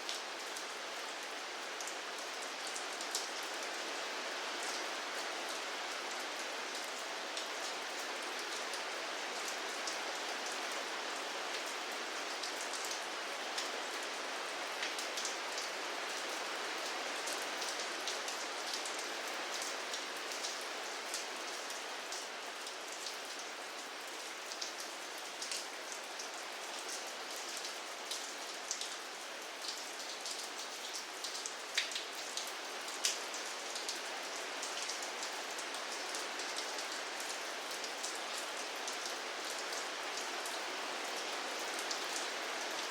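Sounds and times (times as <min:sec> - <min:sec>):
steady rain: 0:00.0 - 0:42.9
raindrops ticking on surface: 0:24.5 - 0:40.2.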